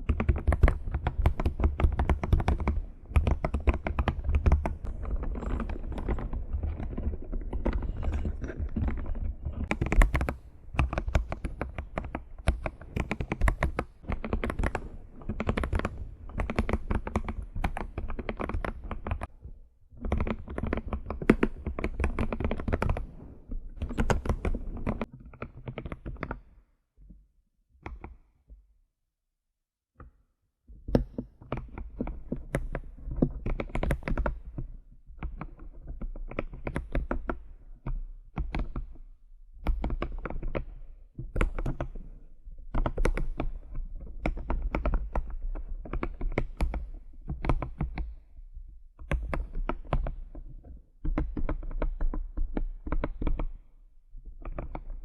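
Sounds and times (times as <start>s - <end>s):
typing on computer keyboard: 0.0s - 19.3s, 20.0s - 23.0s, 42.7s - 48.1s.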